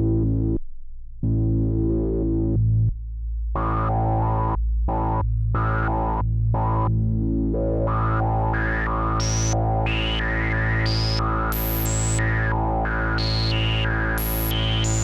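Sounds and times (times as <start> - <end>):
rhythmic synthesizer notes: 8.0 - 15.0
synthesizer bass note: 8.5 - 15.0.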